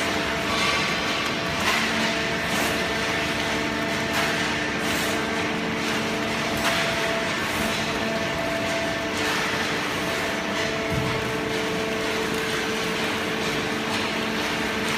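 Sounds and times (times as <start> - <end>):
baling press machine hum: 0.0 - 14.9.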